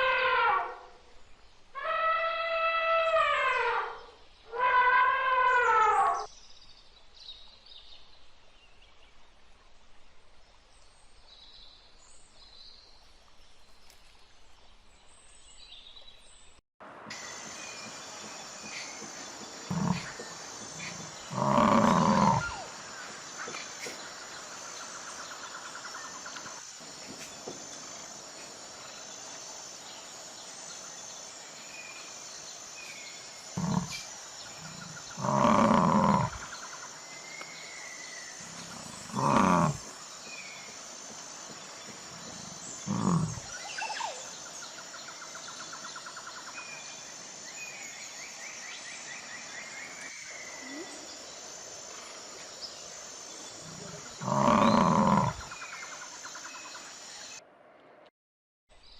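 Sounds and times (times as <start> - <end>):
large wild animal loud calls: 19.6 - 22.8, 33.6 - 36.6, 38.4 - 40.0, 42.8 - 44.1, 53.6 - 55.6.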